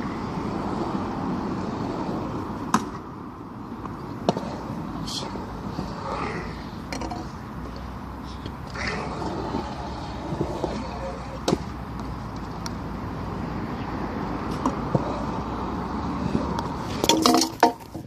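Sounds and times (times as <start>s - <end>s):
skateboard wheels rolling on concrete: 0.0s - 18.0s
skateboard clacking on ground: 3.8s - 4.7s, 6.9s - 12.8s, 16.5s - 18.0s.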